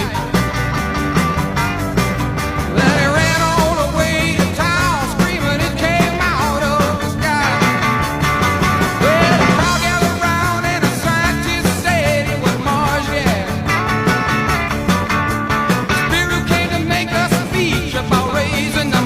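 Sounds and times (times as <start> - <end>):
rock music: 0.0 - 19.0
wavering lead voice: 2.7 - 7.7.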